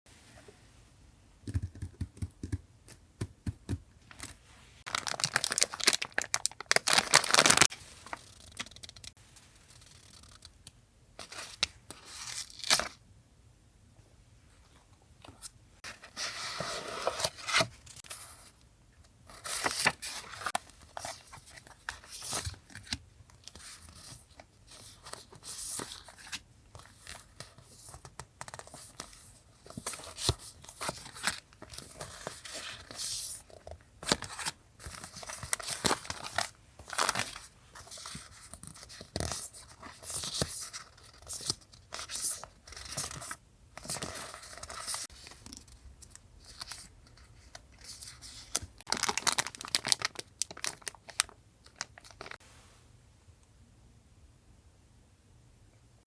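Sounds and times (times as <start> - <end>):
paper packaging tearing: 4.9 - 7.7.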